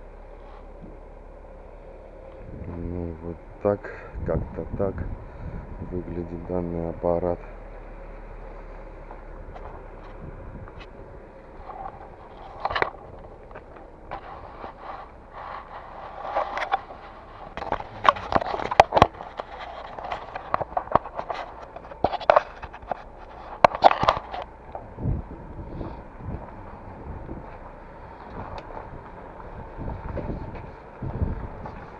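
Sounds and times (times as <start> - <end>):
hard objects knocking and scraping: 11.5 - 25.1.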